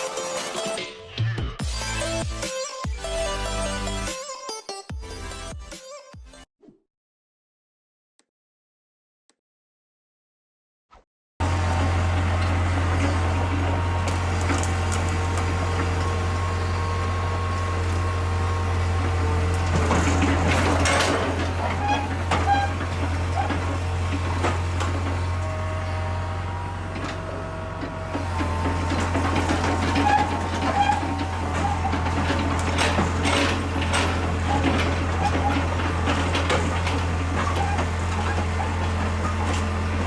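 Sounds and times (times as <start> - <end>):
heavy diesel machinery humming: 11.4 - 40.0
metal squeaks and clanks: 12.2 - 40.0.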